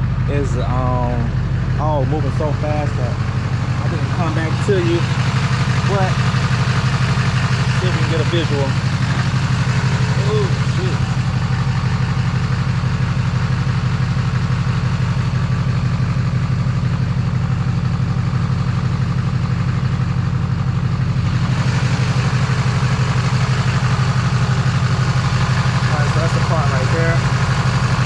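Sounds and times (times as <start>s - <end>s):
diesel truck engine idling: 0.0s - 28.0s.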